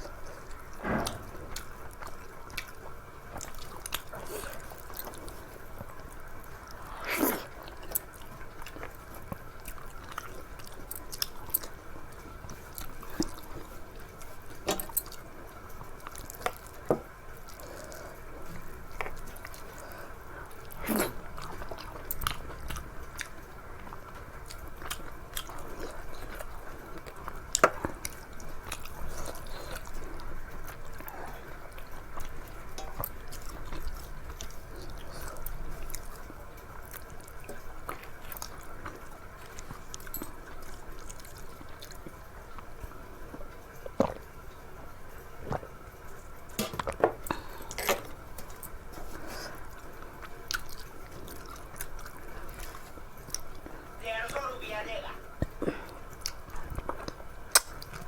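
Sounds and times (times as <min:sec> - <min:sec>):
person chewing: 0:00.0 - 0:44.3, 0:46.6 - 0:53.9, 0:55.4 - 0:58.0
sharp mouth clicks: 0:57.5 - 0:57.8.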